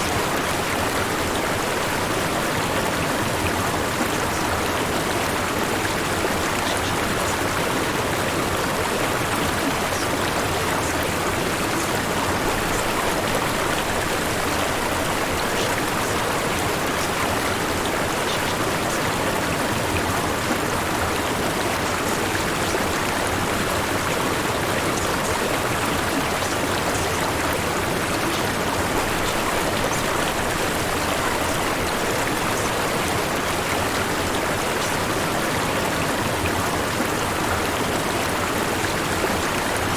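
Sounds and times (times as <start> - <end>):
rushing water: 0.0 - 39.9.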